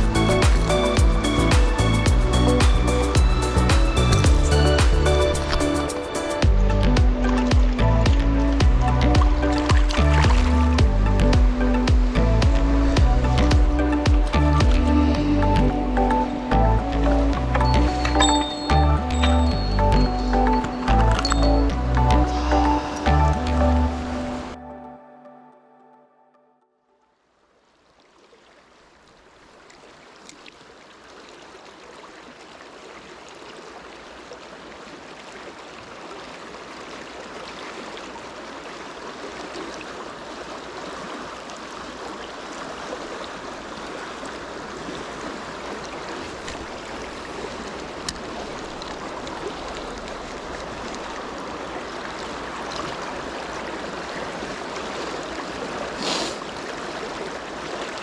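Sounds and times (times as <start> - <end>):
stream flowing: 0.0 - 25.7, 27.4 - 58.0.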